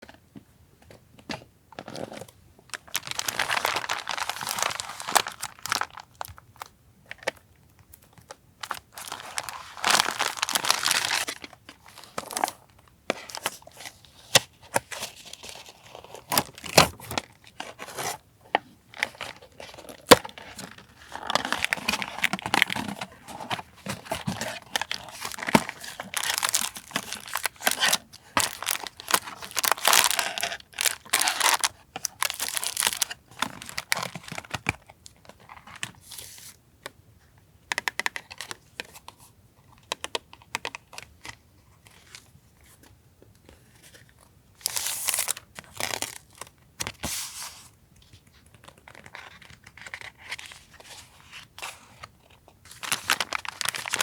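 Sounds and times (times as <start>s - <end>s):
packaging tearing and crinkling: 2.7s - 6.7s, 8.6s - 12.7s, 18.9s - 34.8s, 44.6s - 46.5s, 52.7s - 54.0s.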